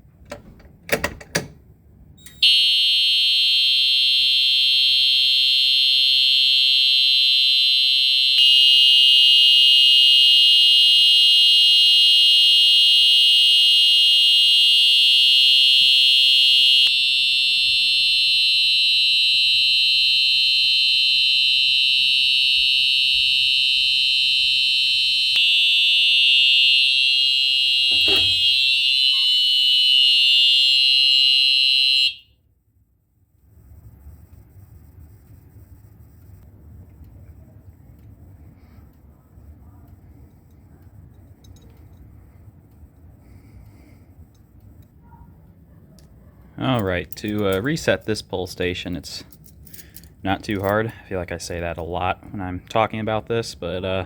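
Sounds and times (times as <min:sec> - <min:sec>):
alarm horn steady tone: 0:02.4 - 0:32.4.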